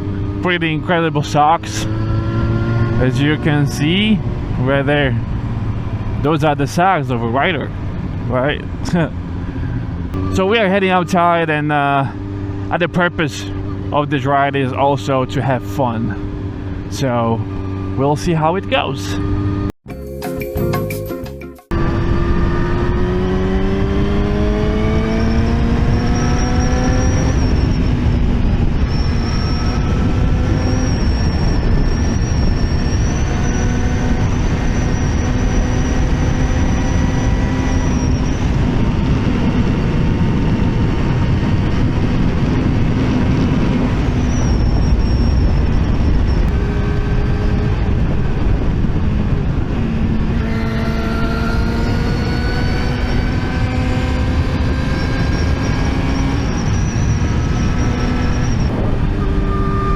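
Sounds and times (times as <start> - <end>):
wind rush: 21.7 - 59.9.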